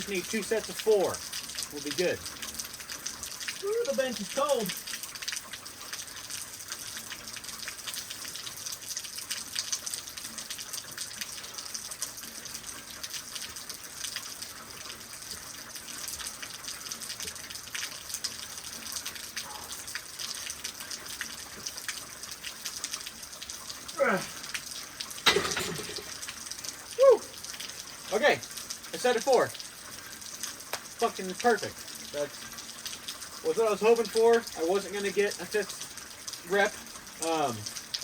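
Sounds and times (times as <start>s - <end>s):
rain drops ticking and splashing: 0.0s - 38.0s.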